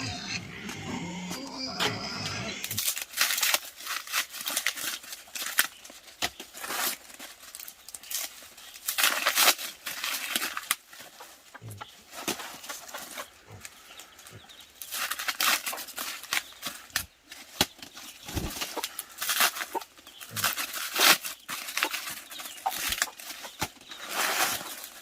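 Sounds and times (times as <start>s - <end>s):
chickens clucking: 0.0s - 2.9s, 10.1s - 25.0s
rustling and scratching: 0.0s - 25.0s.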